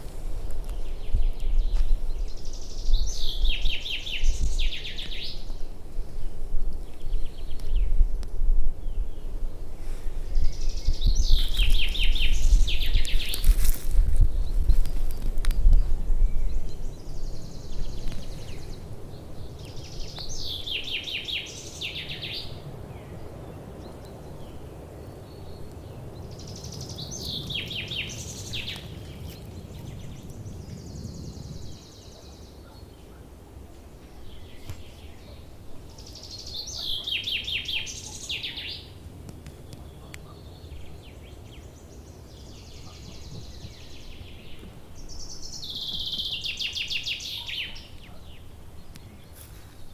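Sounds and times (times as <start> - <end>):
nightingale singing: 0.9 - 5.6, 10.4 - 23.2, 23.9 - 32.9, 34.4 - 39.0, 39.6 - 49.5.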